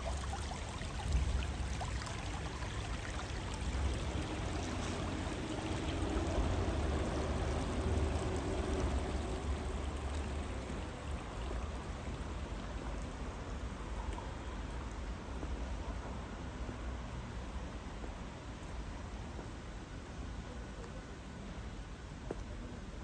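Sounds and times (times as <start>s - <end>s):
stream running over rocks: 0.0s - 15.1s.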